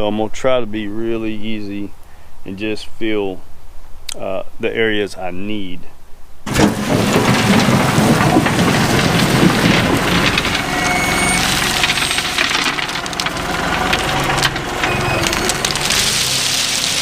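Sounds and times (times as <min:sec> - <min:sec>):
crushed rock crunching and rattling: 0:06.5 - 0:17.0
tractor diesel engine running: 0:06.5 - 0:17.0.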